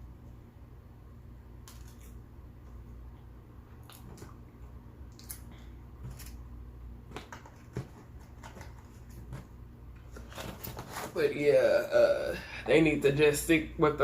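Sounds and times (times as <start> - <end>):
small clicks and rustles of food: 1.6 - 2.8.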